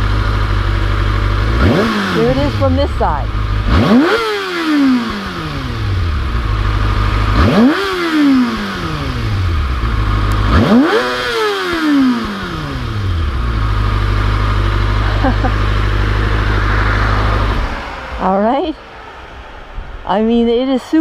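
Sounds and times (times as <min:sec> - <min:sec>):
motorcycle engine revving: 0:00.0 - 0:20.1.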